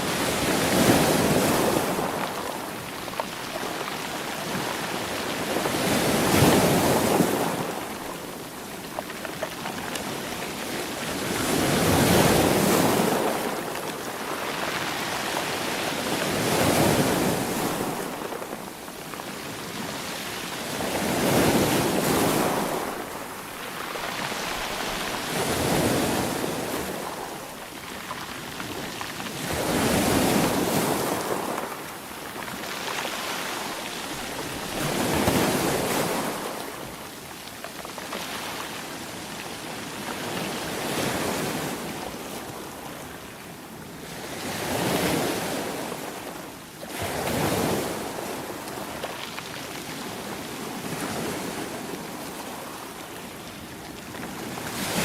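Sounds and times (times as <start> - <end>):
ocean waves breaking: 19.6 - 37.0.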